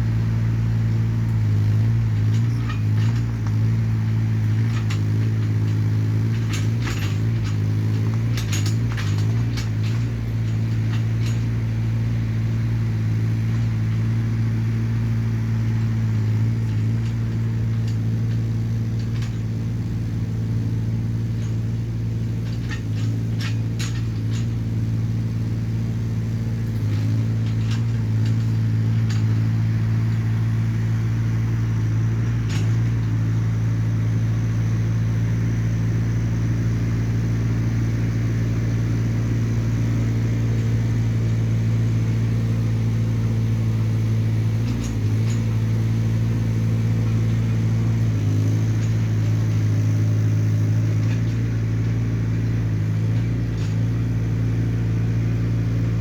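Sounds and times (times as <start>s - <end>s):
excavator diesel engine running: 0.0s - 56.0s
sharp clicks and knocks: 31.8s - 33.6s.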